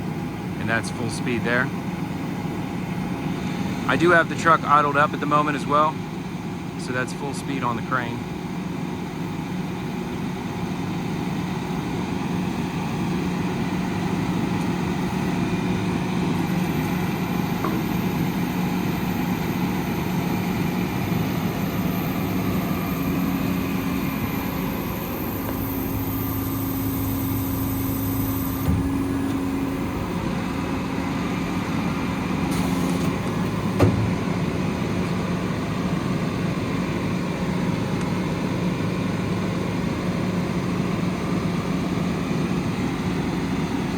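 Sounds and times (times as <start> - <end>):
diesel engine idling: 0.0 - 43.9
hydraulic steady tone: 9.2 - 38.3.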